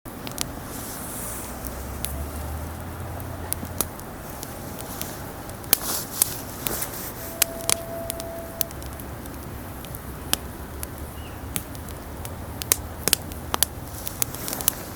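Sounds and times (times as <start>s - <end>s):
wood fire crackling: 0.0s - 14.9s
thin steady whistle: 7.0s - 9.2s.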